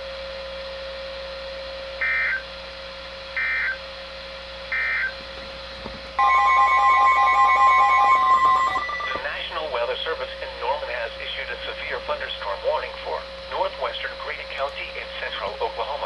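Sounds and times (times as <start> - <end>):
electronic alarm tone: 6.2 - 9.4.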